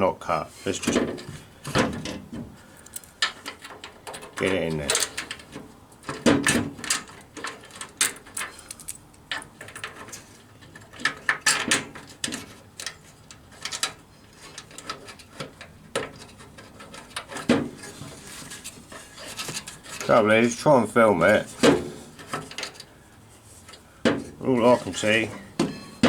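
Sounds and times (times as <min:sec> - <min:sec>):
bolt clinking and scraping: 0:00.6 - 0:23.0.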